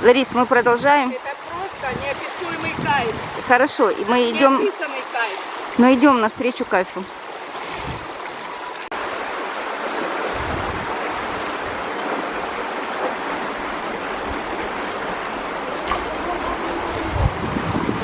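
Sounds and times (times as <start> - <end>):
wind rumble on microphone: 0.0 - 3.7, 7.7 - 8.2, 9.0 - 18.0
stream flowing: 0.0 - 18.0.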